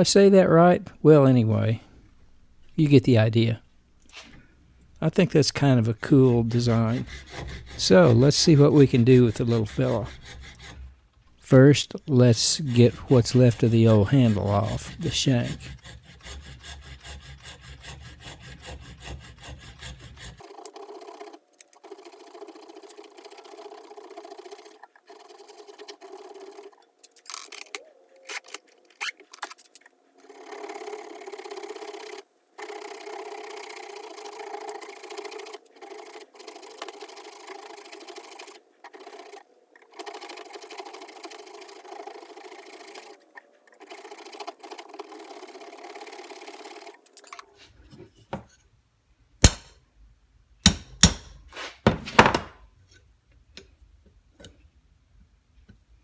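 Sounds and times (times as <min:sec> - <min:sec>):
hand tool scraping wood: 0:05.0 - 0:48.6, 0:49.4 - 0:49.8, 0:50.7 - 0:52.5.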